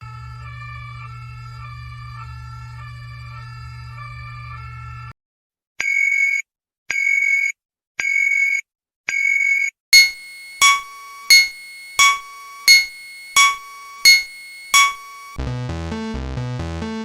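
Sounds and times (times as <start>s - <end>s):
synthesized alarm beep: 10.0s - 15.4s.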